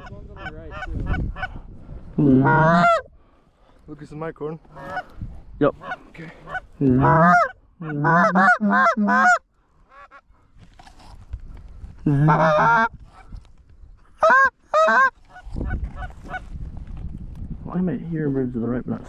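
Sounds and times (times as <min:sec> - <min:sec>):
goose honking: 0:02.3 - 0:03.0, 0:04.7 - 0:05.1, 0:05.8 - 0:10.2, 0:12.1 - 0:12.9, 0:14.2 - 0:16.4.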